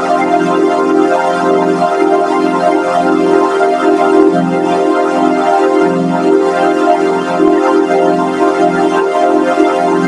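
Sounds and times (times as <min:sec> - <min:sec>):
synthesizer chord with flanger: 0:00.0 - 0:10.0.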